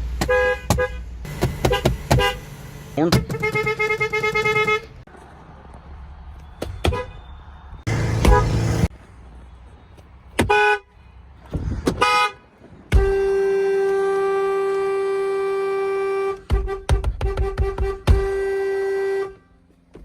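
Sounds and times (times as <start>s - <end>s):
truck horns honking: 0.2s - 5.0s, 7.9s - 8.9s, 10.4s - 11.0s, 12.0s - 19.8s.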